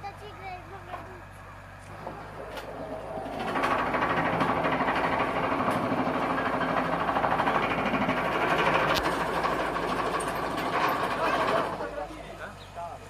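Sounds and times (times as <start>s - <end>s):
vibratory pile driver pulsing: 1.9s - 12.1s.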